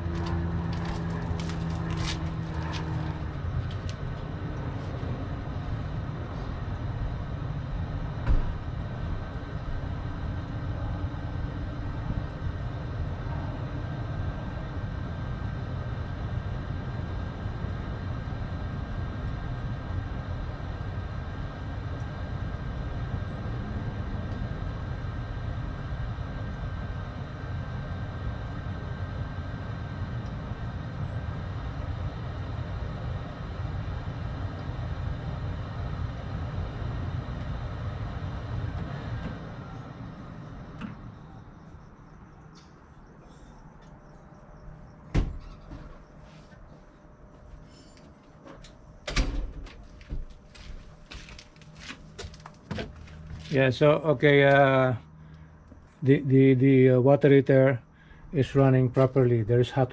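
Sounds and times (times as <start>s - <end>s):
sharp thump: 45.1s - 45.5s.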